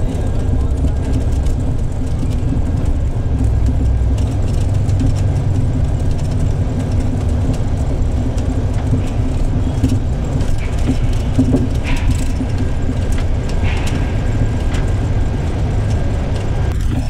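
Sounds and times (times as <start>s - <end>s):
bus diesel engine rumble: 0.0s - 17.0s.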